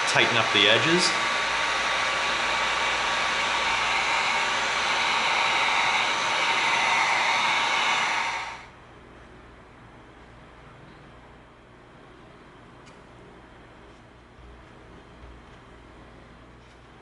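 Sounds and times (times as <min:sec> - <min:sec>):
heat gun blowing: 0:00.0 - 0:08.7.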